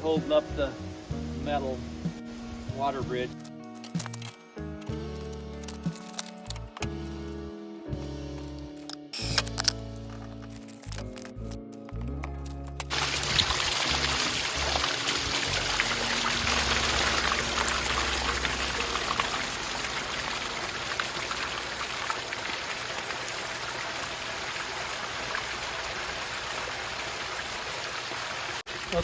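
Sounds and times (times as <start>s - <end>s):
water splashing down rocks: 12.8s - 29.0s.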